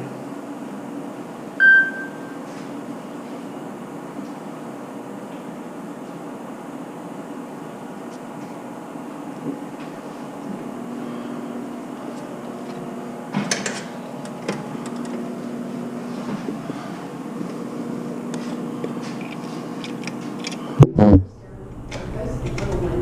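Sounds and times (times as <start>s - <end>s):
steady mechanical hum: 0.0s - 23.0s.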